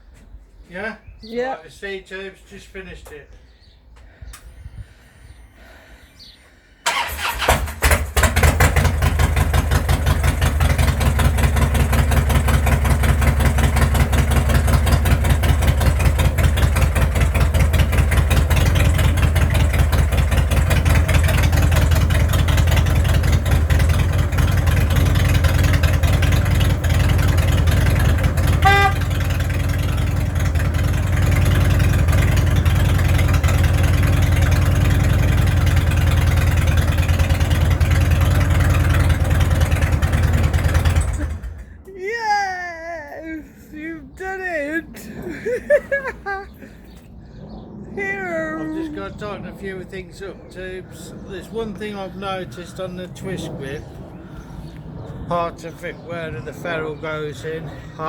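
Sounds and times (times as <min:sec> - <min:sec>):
motorcycle engine idling: 0:06.9 - 0:41.8
motorcycle horn beep: 0:28.1 - 0:29.6.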